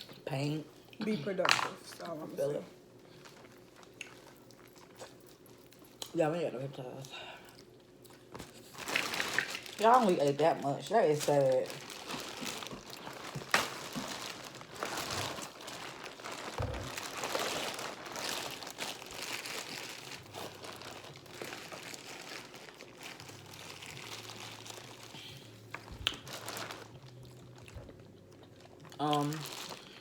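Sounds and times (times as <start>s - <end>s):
crinkling and rustling: 8.2s - 28.0s.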